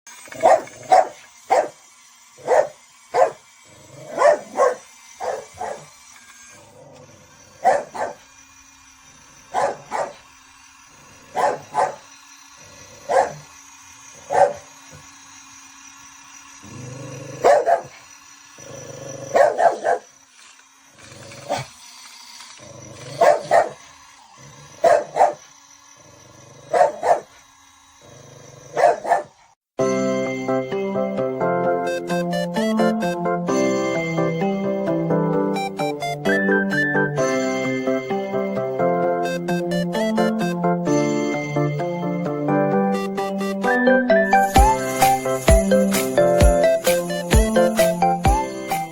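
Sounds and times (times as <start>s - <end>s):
dog barking: 0.4s - 1.8s, 2.4s - 3.4s, 4.1s - 5.9s, 7.6s - 8.2s, 9.5s - 10.2s, 11.3s - 12.1s, 13.1s - 13.4s, 14.3s - 14.6s, 17.4s - 18.0s, 19.3s - 20.1s, 23.2s - 23.8s, 24.8s - 25.4s, 26.7s - 27.3s, 28.7s - 29.4s.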